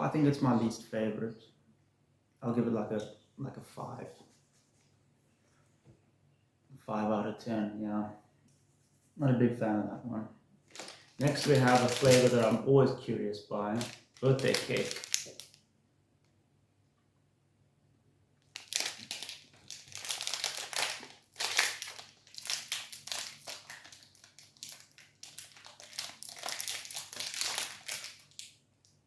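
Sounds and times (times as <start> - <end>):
plastic wrapper crinkling: 10.7 - 12.6, 13.7 - 15.6, 18.4 - 28.6.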